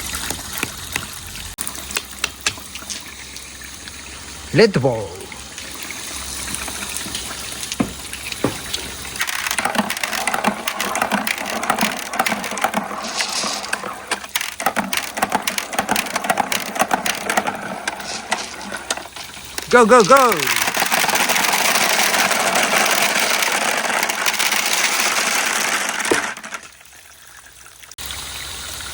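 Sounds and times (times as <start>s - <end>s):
water rushing: 0.0s - 27.0s
marbles clicking and clattering: 8.5s - 26.8s.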